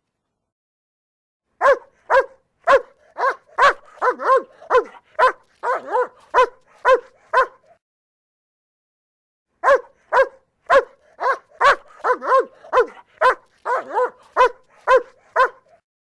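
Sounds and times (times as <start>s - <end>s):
dog barking: 1.6s - 7.8s, 9.6s - 15.8s.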